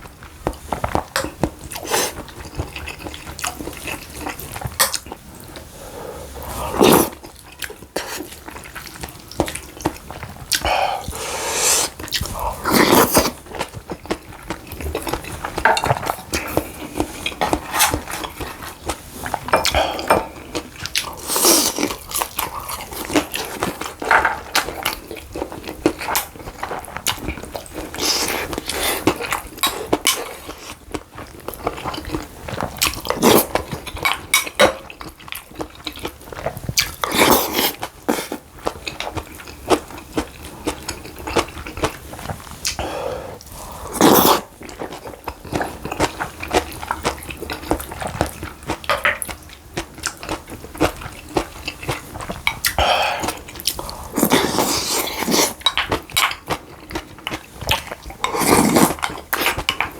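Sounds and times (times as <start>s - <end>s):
chewing and biting: 11.9s - 42.8s, 43.4s - 59.9s.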